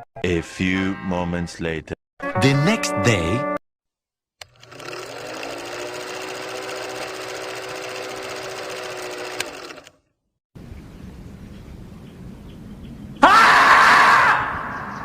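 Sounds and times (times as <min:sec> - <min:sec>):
small machine clattering: 0:04.4 - 0:10.0.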